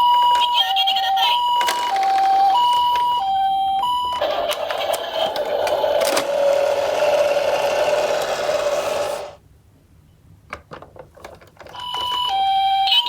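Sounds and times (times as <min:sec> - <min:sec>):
toy cars rattling down slope: 0:04.2 - 0:09.4.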